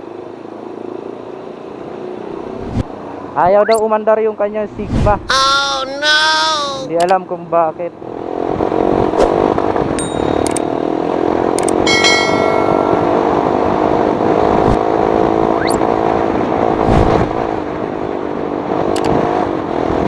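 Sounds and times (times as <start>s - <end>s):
short ringing ding: 10.0s - 10.8s, 11.9s - 13.4s
clicks: 10.4s - 10.7s, 11.6s - 11.8s.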